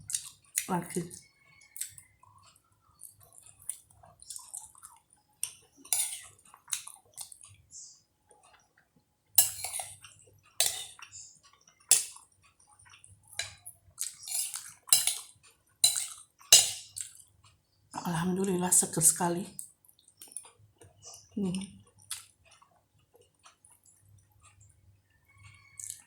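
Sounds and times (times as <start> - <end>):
chewing and mouth sounds: 0.0 - 7.7, 9.5 - 17.3, 19.6 - 24.8, 25.5 - 26.0
spoon clinking against a plate: 5.5 - 7.3, 9.4 - 12.2, 13.3 - 17.2.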